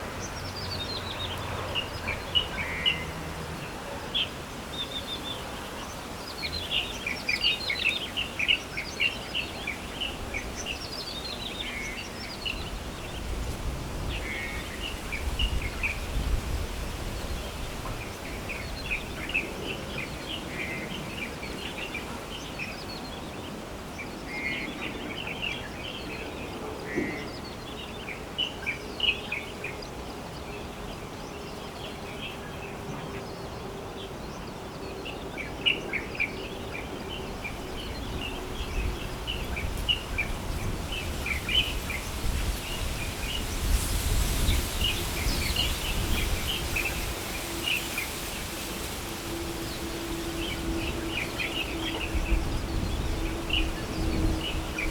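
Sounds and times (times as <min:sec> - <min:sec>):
birds chirping: 0:17.1 - 0:54.9.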